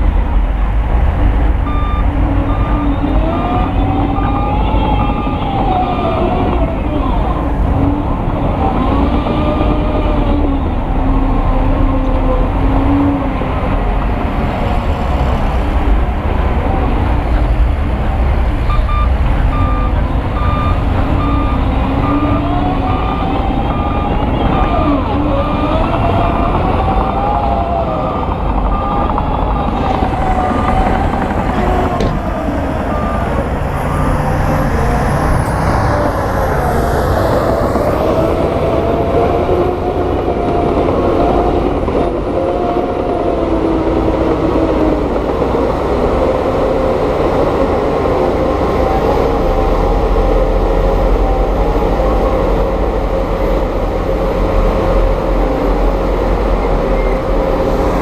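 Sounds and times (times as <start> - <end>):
heavy diesel machinery running: 0.0 - 58.0.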